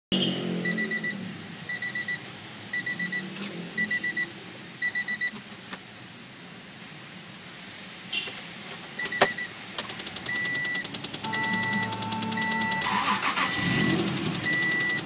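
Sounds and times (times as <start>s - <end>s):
sharp clicks: 9.1s - 12.8s
quick high electronic beeps: 10.2s - 15.0s.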